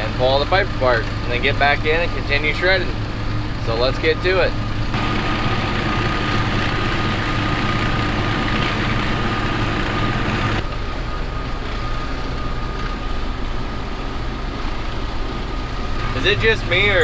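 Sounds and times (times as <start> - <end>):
tractor engine running: 4.6 - 10.6
shredder whine and rushing: 5.0 - 10.6.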